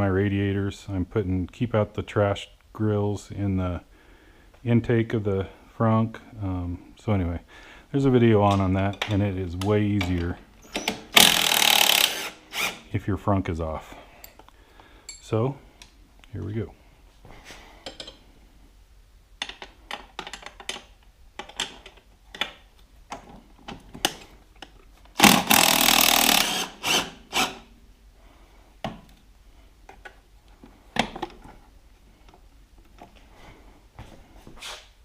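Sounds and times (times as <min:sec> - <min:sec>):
power tool burst: 0:11.1 - 0:12.8, 0:25.2 - 0:27.6
tools clicking and knocking on metal: 0:17.8 - 0:18.2, 0:19.4 - 0:24.8.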